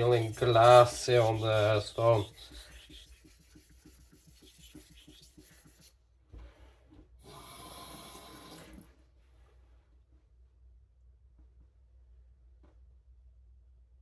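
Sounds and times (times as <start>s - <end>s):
knife rubbing on whetstone: 0.0s - 5.9s.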